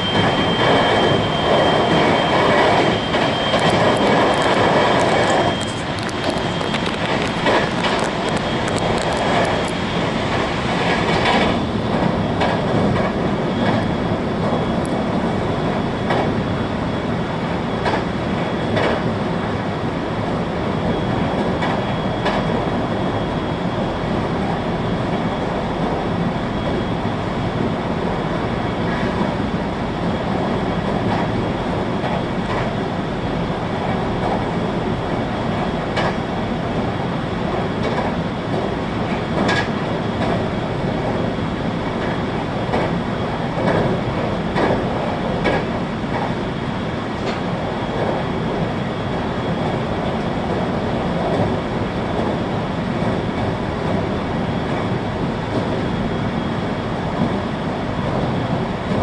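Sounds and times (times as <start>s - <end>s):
train wheels rumbling on rail: 0.0s - 59.0s
clacks over rail joints: 2.0s - 9.7s, 10.8s - 15.0s, 17.8s - 18.1s, 18.8s - 19.0s, 32.0s - 32.8s, 35.6s - 36.2s, 37.5s - 40.4s, 41.9s - 43.0s, 43.6s - 46.4s.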